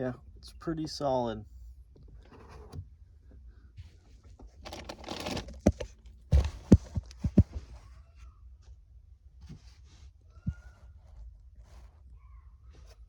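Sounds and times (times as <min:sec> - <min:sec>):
knocks and clunks of parts: 0:04.4 - 0:07.8.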